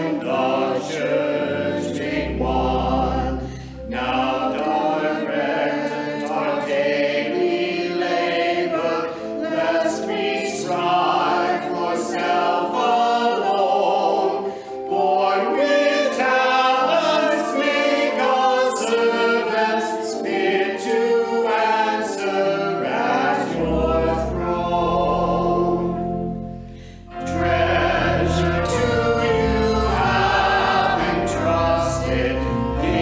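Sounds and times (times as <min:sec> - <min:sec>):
choir singing: 0:00.0 - 0:33.0
musical accompaniment: 0:00.0 - 0:33.0
deep bass notes: 0:24.7 - 0:33.0.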